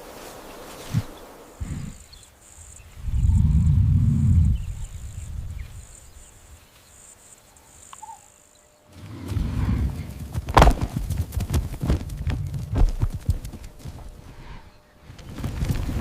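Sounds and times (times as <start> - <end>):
insects chirping: 0.0 - 16.0
animal footfalls on dry ground: 8.9 - 14.3, 15.0 - 16.0.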